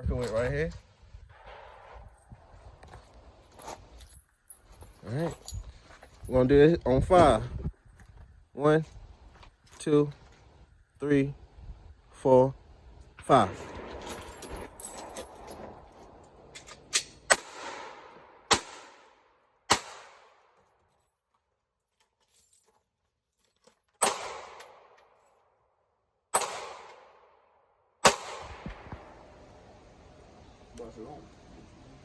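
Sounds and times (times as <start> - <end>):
gunshots with echo: 13.4 - 15.9, 17.3 - 20.3, 24.0 - 24.8, 26.4 - 27.1, 28.0 - 29.2.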